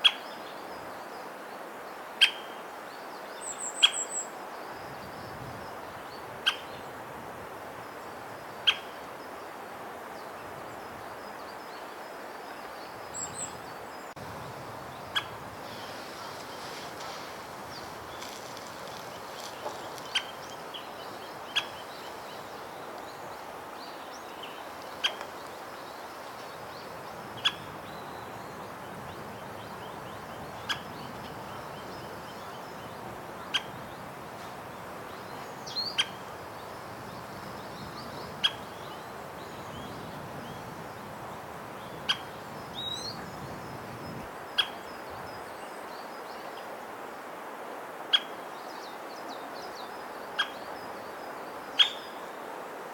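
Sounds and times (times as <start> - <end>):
woodpecker sharp call notes: 15.1 - 22.7, 24.4 - 25.7.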